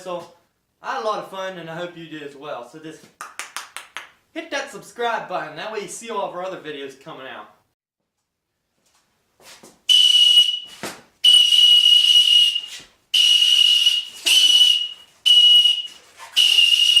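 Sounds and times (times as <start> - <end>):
wooden whistle shrill blasts: 9.9 - 17.0.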